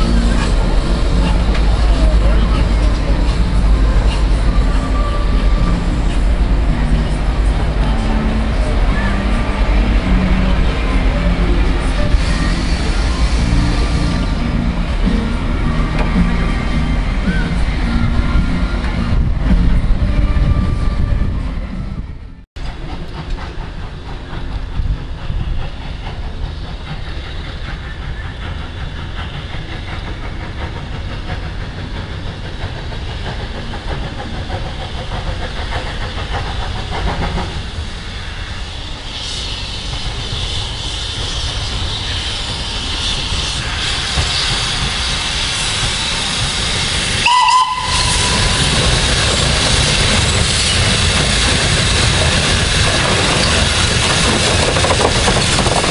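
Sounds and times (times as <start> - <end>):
steam locomotive rumble: 0.0 - 55.9
steam hissing: 9.0 - 15.3, 22.6 - 55.9
train whistle toot: 47.1 - 48.9.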